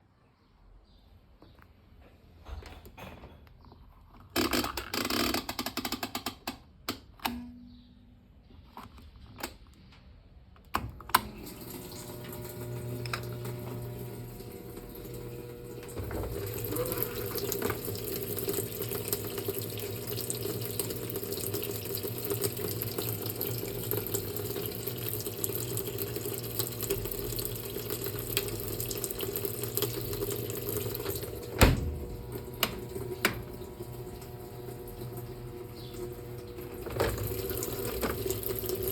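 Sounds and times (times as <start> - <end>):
washing machine sharp clicks: 4.4 - 7.8, 30.8 - 34.7
water rushing into washing machine: 11.0 - 38.9.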